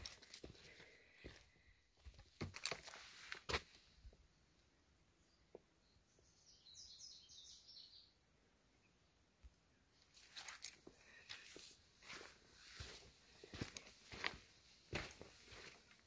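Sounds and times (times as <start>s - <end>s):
footsteps: 0.0s - 3.8s, 10.2s - 16.0s
songbird chirping: 3.9s - 16.0s.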